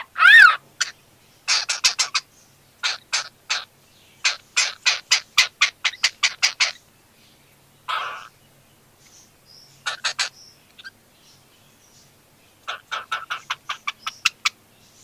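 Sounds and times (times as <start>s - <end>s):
cockatiel chirping: 12.7s - 14.6s.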